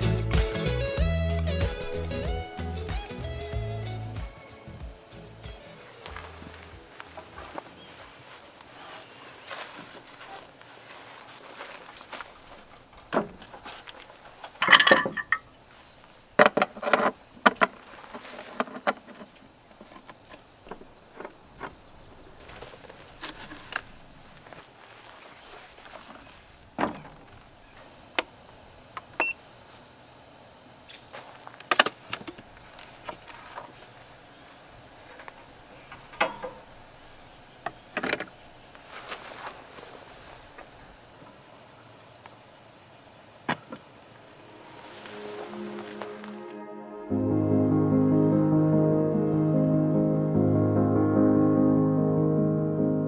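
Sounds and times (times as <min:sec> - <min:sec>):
crickets chirping: 0:01.8 - 0:46.6
knocks and clatters: 0:14.5 - 0:15.7, 0:16.4 - 0:21.8.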